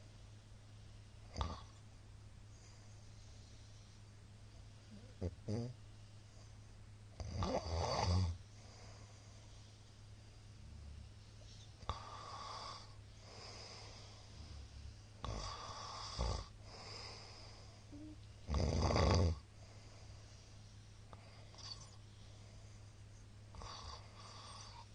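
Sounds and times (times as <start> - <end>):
man snoring: 4.9 - 5.8, 7.2 - 8.4, 11.9 - 14.0, 14.6 - 17.1, 18.5 - 19.4.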